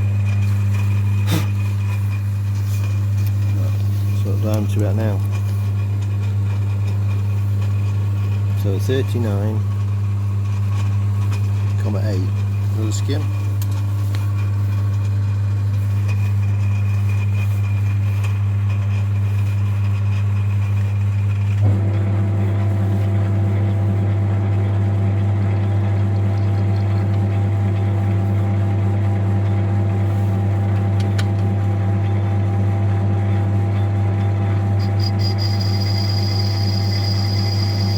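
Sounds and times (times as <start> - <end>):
metal lathe humming: 0.0 - 17.4, 33.7 - 37.9
high whine: 34.4 - 37.9.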